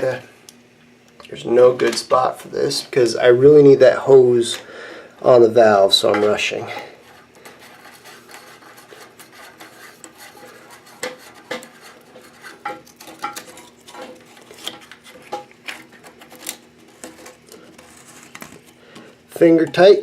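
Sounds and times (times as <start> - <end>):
plastic parts scraping porcelain: 6.9 - 19.1.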